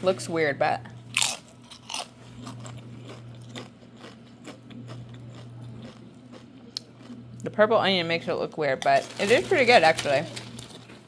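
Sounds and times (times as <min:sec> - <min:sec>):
steady low hum: 0:00.0 - 0:11.0
person chewing crunchy food: 0:01.0 - 0:07.4.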